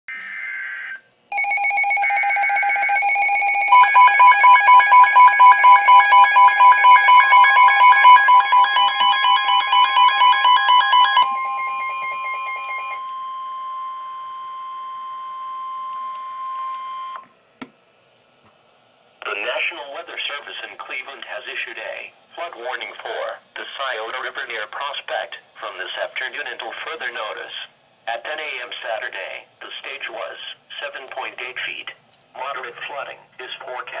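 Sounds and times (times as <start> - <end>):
pulsing electronic alarm: 0.1 - 17.2
steady warning tone: 0.2 - 17.2.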